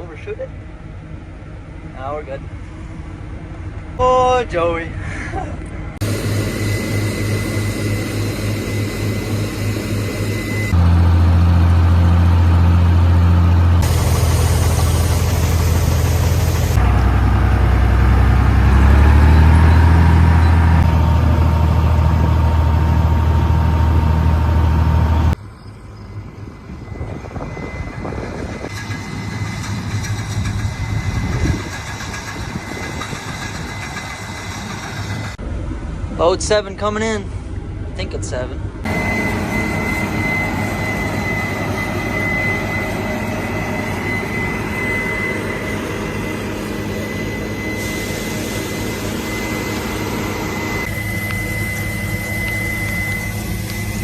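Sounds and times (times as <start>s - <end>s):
heavy farm machinery engines: 0.0s - 54.0s.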